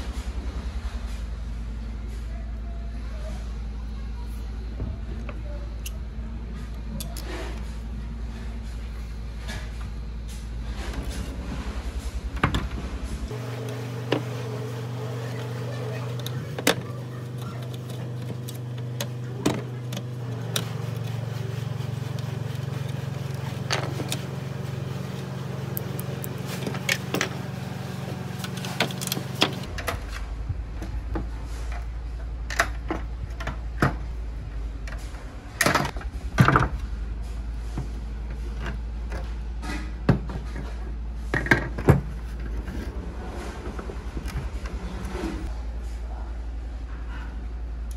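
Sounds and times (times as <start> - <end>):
steady low hum: 0.0 - 47.9
clicks of fan parts being handled: 15.4 - 24.4, 28.3 - 31.0.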